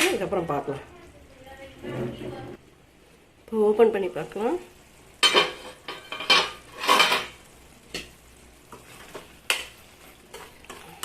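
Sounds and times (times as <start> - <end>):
metal pan lid clanking: 5.2 - 8.1
metal spoon stirring and scraping: 5.2 - 11.0.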